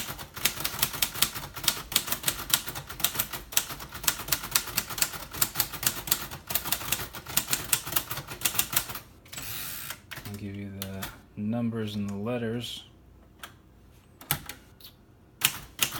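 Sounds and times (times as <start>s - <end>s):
manual typewriter typing: 0.0s - 11.2s, 15.4s - 15.9s.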